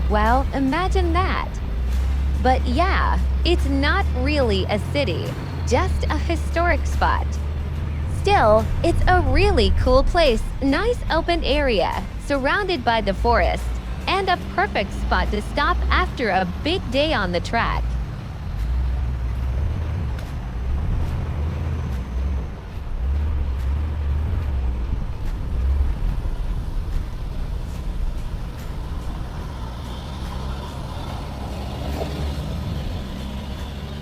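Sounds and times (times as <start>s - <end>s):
vehicle engine rumbling: 0.0s - 34.0s.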